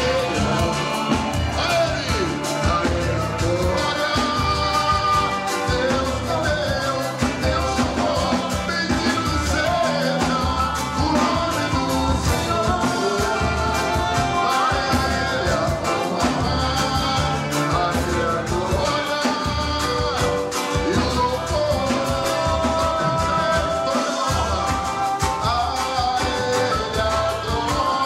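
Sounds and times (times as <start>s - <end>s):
live band playing: 0.0s - 28.0s
person singing: 0.0s - 28.0s.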